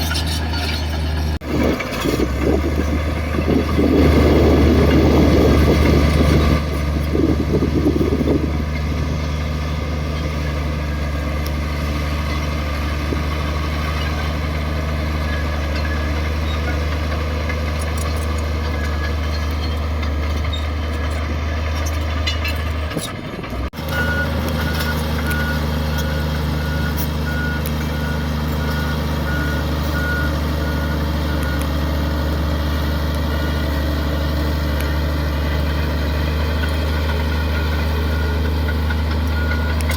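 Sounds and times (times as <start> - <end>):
heavy diesel engine running: 0.0 - 39.9
reversing alarm beeping: 23.8 - 32.3, 36.6 - 39.9.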